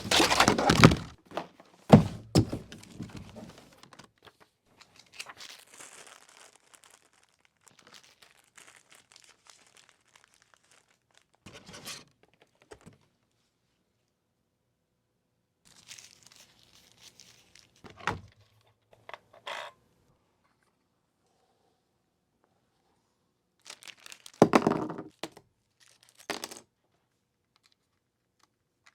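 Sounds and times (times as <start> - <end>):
packaging crinkling and tearing: 0.0 - 1.2, 1.9 - 11.4, 15.7 - 17.8, 23.6 - 24.4, 25.8 - 26.4.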